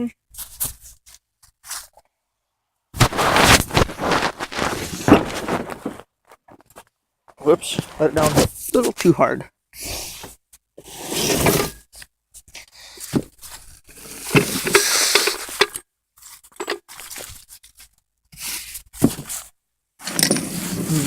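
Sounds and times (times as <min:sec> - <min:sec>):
tools scraping on ground: 0:14.0 - 0:15.8.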